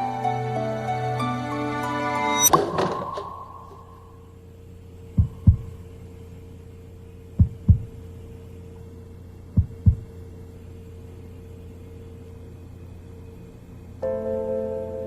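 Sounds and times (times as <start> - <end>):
steady low hum: 2.3 - 15.0
heartbeat thumps: 5.1 - 5.8, 7.4 - 8.0, 9.6 - 10.1.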